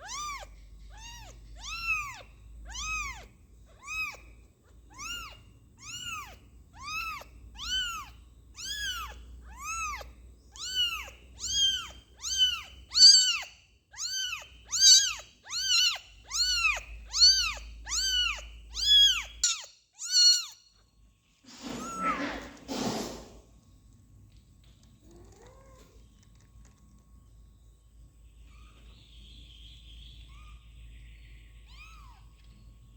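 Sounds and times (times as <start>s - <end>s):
kitten meowing: 0.0s - 4.3s, 4.9s - 20.6s, 21.6s - 22.5s, 31.7s - 32.2s
rough muffled sound: 21.5s - 23.5s.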